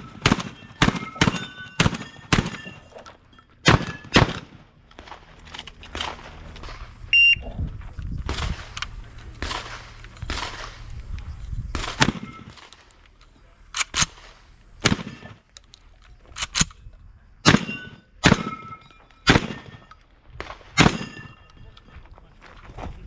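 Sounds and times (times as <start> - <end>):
shotgun shots: 0.0 - 3.0, 3.6 - 5.2, 8.2 - 10.9, 11.7 - 12.9, 13.8 - 15.4, 17.4 - 21.5.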